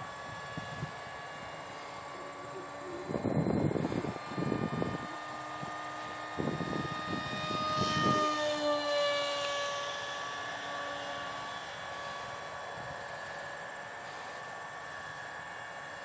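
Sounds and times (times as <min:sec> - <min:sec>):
model jet electric motor whining: 0:00.0 - 0:16.0
wind rumbling on microphone: 0:02.7 - 0:09.7.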